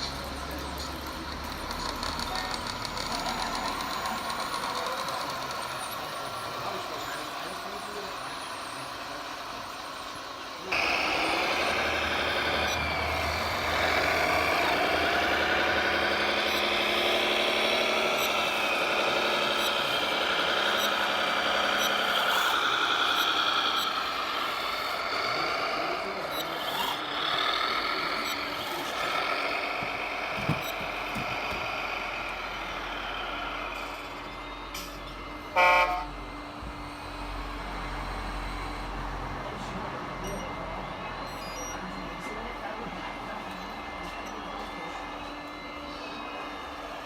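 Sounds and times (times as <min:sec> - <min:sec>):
model diesel engine sound: 0:00.0 - 0:47.0
short horn toot: 0:35.5 - 0:36.1.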